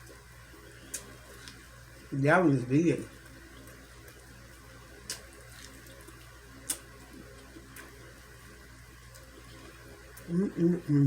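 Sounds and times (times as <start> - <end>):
chewing and smacking: 0.0 - 1.7, 3.1 - 10.9
quiet low hum: 0.0 - 11.0.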